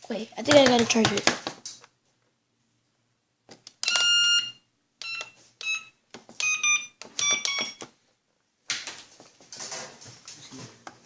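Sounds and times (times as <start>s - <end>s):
short electronic beeps: 3.9s - 7.8s.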